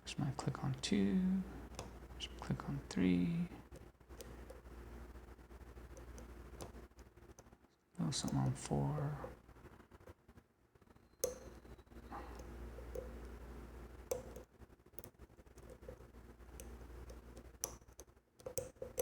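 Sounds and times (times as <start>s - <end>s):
low steady hum: 0.0s - 19.0s
lock pick metallic clicks: 11.2s - 13.4s.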